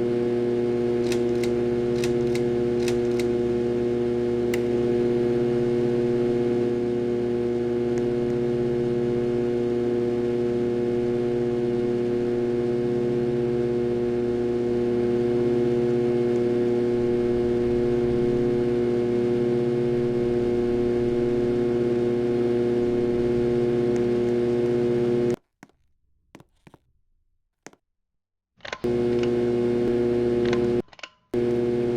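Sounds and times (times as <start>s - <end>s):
ceiling fan motor humming: 0.0s - 25.4s, 31.4s - 31.9s.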